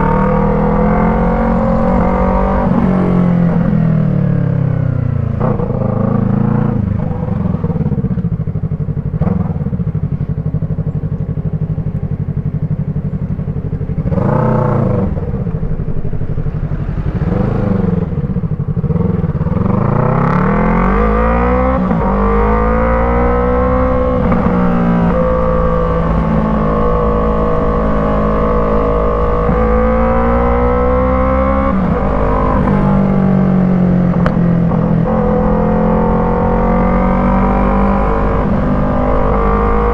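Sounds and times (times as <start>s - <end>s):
motorcycle engine revving: 0.0s - 39.9s.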